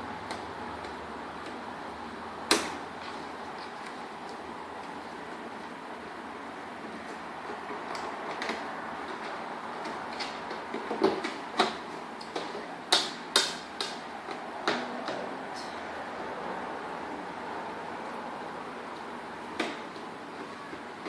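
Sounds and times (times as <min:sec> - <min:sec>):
steady background hiss: 0:00.0 - 0:21.0.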